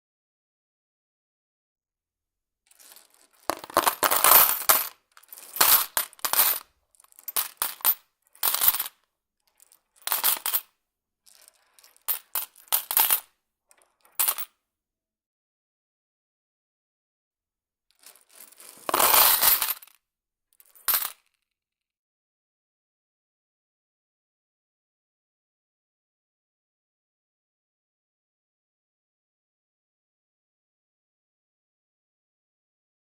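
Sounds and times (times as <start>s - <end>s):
coins clattering into machine: 2.8s - 6.6s, 7.2s - 8.9s, 10.1s - 10.6s, 11.6s - 13.2s, 18.1s - 19.8s.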